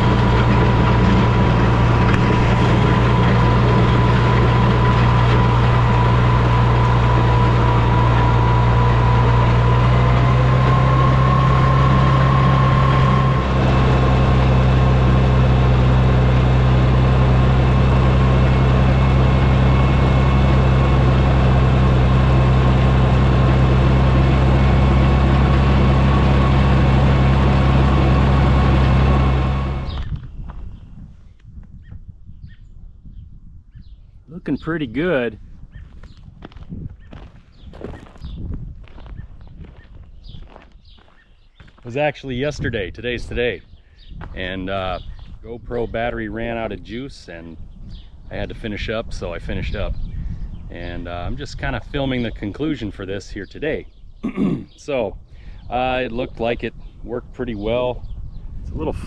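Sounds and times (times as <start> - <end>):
tractor engine running: 0.0 - 30.3.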